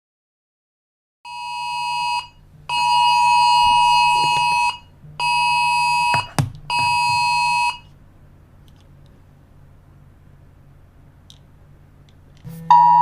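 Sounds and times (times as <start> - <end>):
buzzy electronic alarm tone: 1.3 - 7.9, 12.5 - 13.0.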